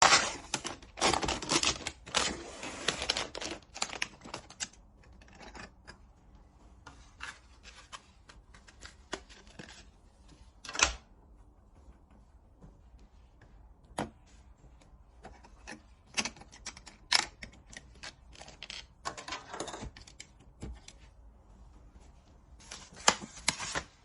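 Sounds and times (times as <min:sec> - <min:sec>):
packaging rustling: 0:00.0 - 0:04.8.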